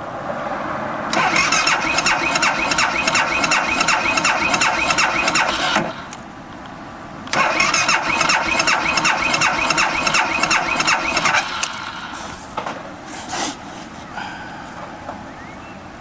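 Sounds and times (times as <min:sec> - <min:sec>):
motorcycle engine cranking: 0:01.1 - 0:06.2, 0:07.3 - 0:12.1.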